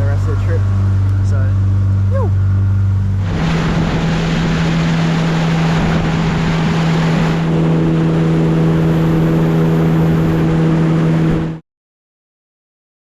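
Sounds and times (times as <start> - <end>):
outboard motor running: 0.0 - 11.6
wind and water rushing: 2.2 - 11.6.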